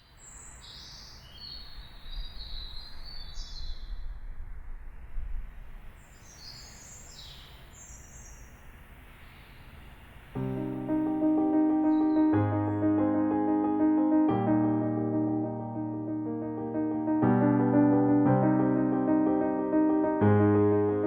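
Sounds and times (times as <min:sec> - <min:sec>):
birds chirping: 0:10.4 - 0:21.0.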